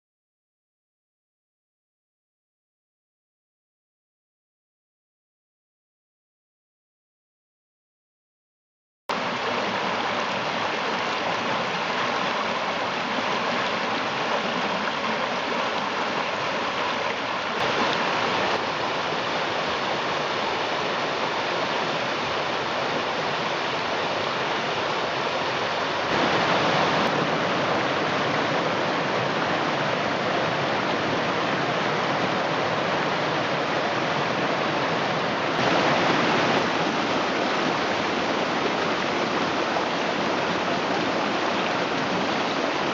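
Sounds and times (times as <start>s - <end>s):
creek rushing over rocks: 9.1s - 42.9s.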